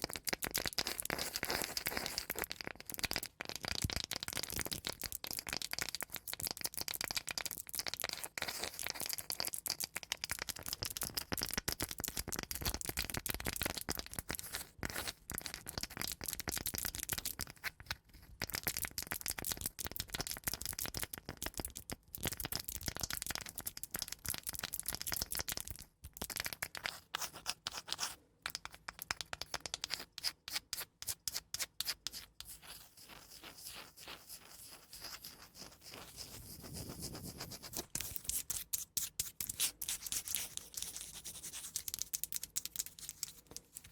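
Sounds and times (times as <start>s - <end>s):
scratching on cork and wood: 26.3s - 43.9s.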